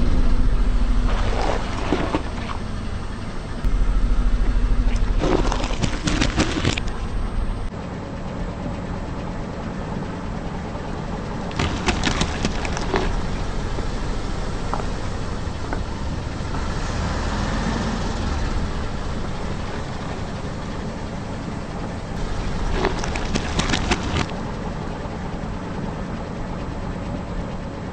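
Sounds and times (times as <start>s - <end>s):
car engine rumbling: 0.0s - 27.8s
engine sharp crackles: 0.8s - 7.7s, 11.5s - 24.6s.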